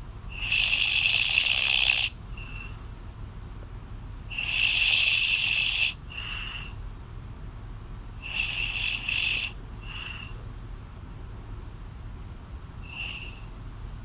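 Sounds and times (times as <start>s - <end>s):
woman snoring over phone: 0.4s - 2.7s, 4.4s - 6.7s, 8.2s - 10.4s, 12.9s - 13.4s.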